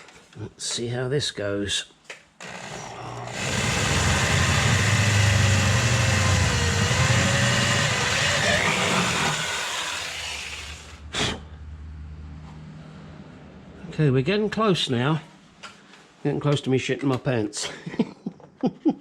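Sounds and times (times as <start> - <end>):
electric drill drilling metal: 2.4 - 11.0.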